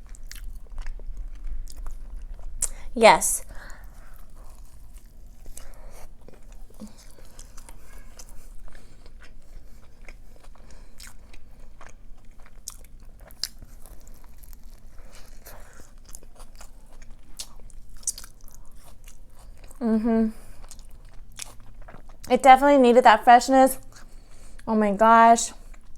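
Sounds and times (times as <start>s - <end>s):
chewing and biting food: 0.0s - 2.8s, 3.5s - 19.8s, 20.4s - 22.3s
wet mouth clicks: 2.6s - 2.8s.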